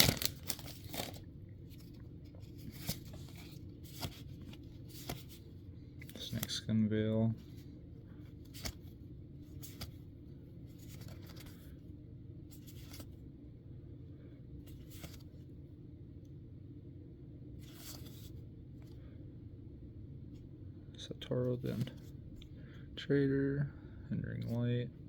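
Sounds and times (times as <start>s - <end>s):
cards rustling in hand: 0.0s - 11.9s, 12.5s - 13.2s, 14.6s - 15.5s, 17.6s - 19.0s, 21.3s - 22.6s
faint steady hum: 0.0s - 25.0s.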